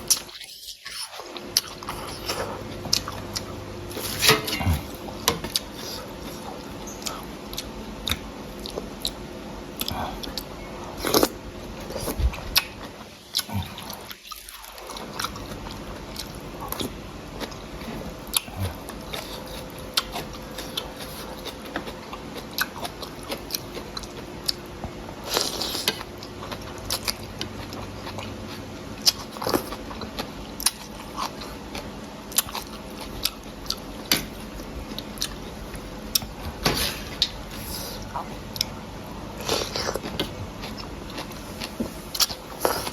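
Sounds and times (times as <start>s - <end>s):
person chewing and biting: 9.8s - 38.8s.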